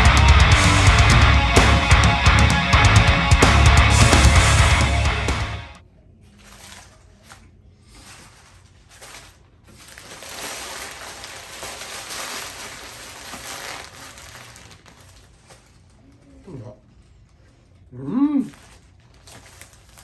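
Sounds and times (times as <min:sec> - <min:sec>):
crunchy food rustling: 0:06.2 - 0:20.0.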